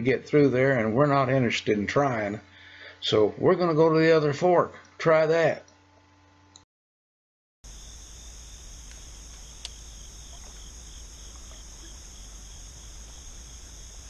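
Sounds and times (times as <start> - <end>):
insect chorus chirring: 7.6 - 14.0
faint click: 8.8 - 10.6.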